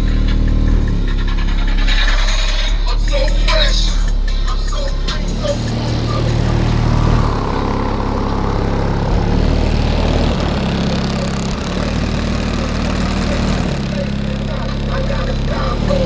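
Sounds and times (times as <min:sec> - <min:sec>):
deep bass music through subwoofer: 0:00.0 - 0:16.0.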